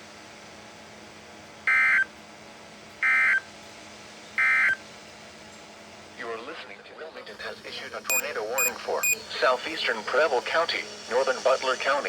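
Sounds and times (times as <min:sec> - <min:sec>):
steady hiss: 0:07.3 - 0:12.0.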